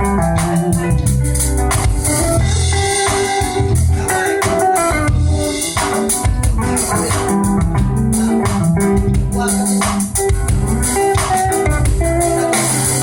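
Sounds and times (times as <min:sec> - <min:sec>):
bass guitar: 0:00.0 - 0:13.0
drum kit: 0:00.0 - 0:13.0
guitars: 0:00.0 - 0:13.0.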